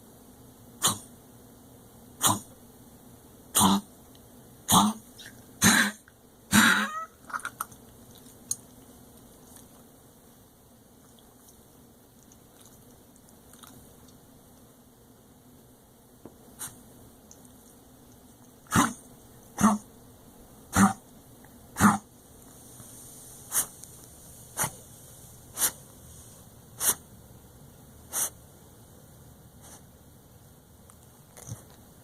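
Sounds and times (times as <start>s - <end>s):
dog coughing: 0.8s - 1.1s, 2.2s - 2.5s, 3.6s - 3.9s, 4.7s - 7.6s, 18.7s - 19.0s, 19.6s - 19.8s, 20.7s - 21.0s, 21.8s - 22.1s.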